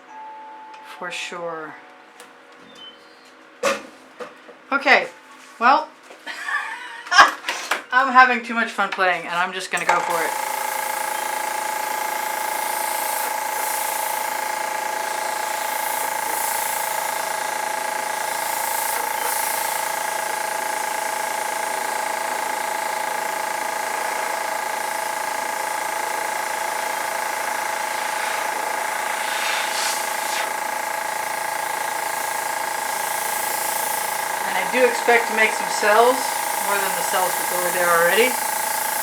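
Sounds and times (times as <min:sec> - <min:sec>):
heat tool whining and hissing: 0:09.8 - 0:39.0.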